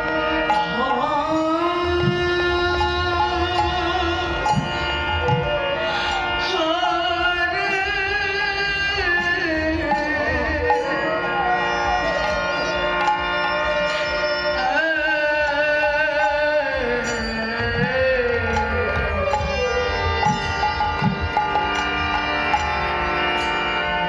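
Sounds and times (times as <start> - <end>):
devotional melody gliding tones: 0.0 - 24.0
drum strokes: 16.3 - 22.7.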